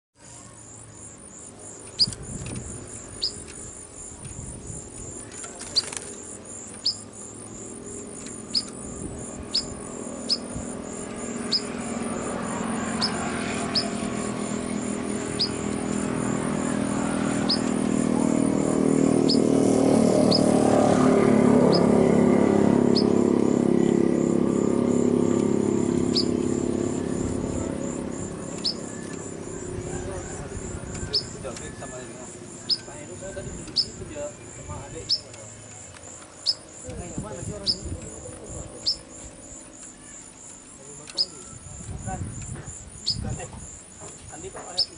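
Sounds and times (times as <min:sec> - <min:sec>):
caged bird chirping: 0:00.2 - 0:44.9
high pulsing trill: 0:06.4 - 0:35.6.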